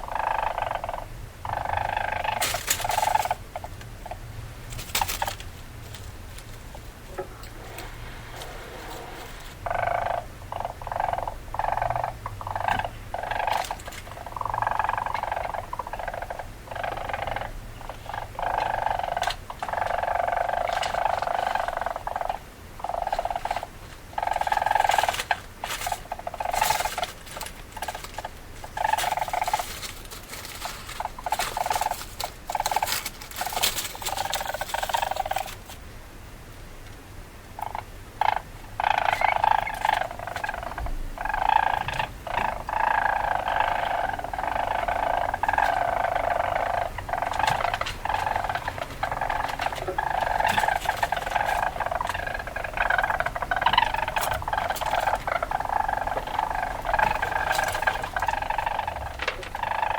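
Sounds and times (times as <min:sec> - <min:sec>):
weasel calls: 0:00.0 - 0:04.2, 0:07.1 - 0:29.8, 0:37.6 - 0:59.9.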